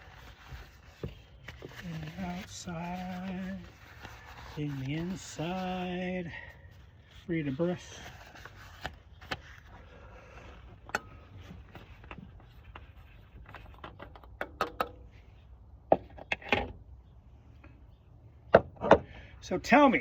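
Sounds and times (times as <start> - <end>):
objects being handled: 0.0 - 5.4, 7.9 - 15.2.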